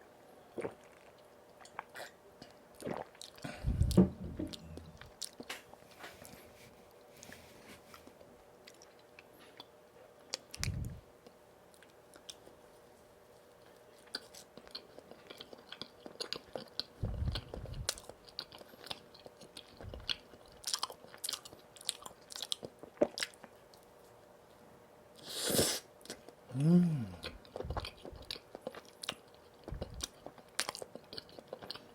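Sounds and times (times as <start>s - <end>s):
low thuds: 3.6s - 4.7s, 17.0s - 18.0s, 29.7s - 30.1s
chewing and biting donuts: 14.0s - 23.6s, 26.1s - 31.9s.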